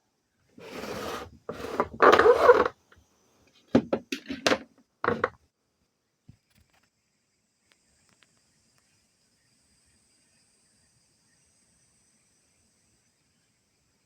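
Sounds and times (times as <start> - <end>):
rubbing and scraping: 0.6 - 2.7, 3.8 - 5.3
short knocks and clunks: 3.8 - 5.3.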